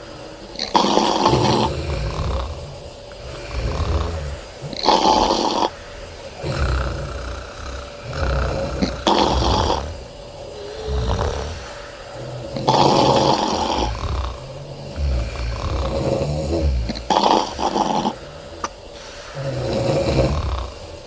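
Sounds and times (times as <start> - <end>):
women snoring: 0.0 - 21.0.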